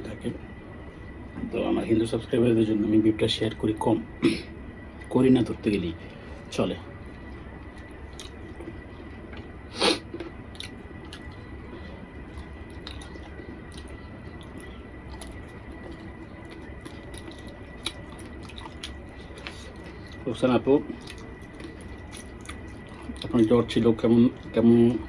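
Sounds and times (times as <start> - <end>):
person chewing wet food: 6.1 - 9.2, 9.8 - 24.6.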